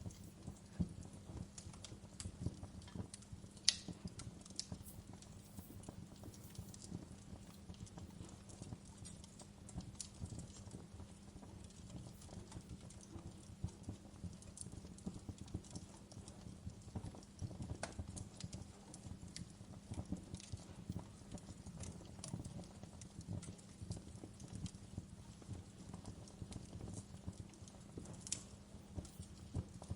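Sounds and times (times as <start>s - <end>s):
low steady hum: 0.0s - 13.8s
wood fire crackling: 0.0s - 29.9s.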